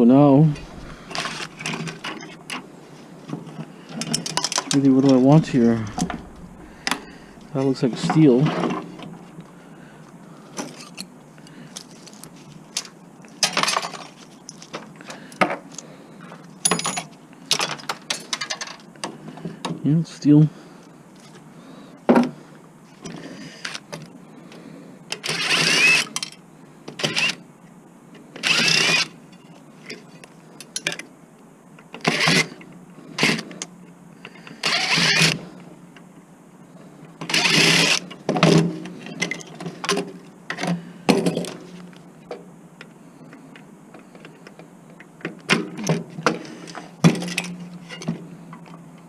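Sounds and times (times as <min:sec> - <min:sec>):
metal parts scraping and clanking: 0:00.5 - 0:02.4, 0:03.9 - 0:09.4.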